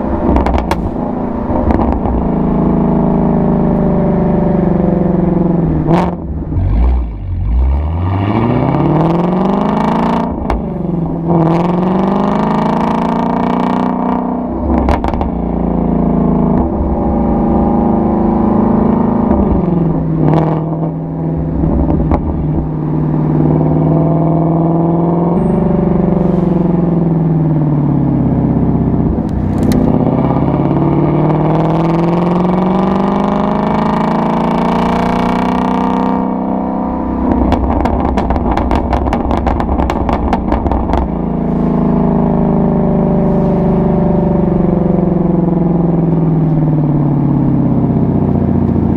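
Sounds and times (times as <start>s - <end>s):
car engine revving through exhaust: 0.0s - 48.9s
exhaust crackles: 25.3s - 34.1s, 37.0s - 48.9s.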